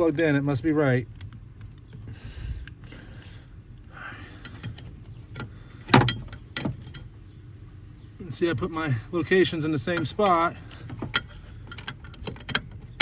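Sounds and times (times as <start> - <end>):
small clicks and rattles: 9.9 - 13.0.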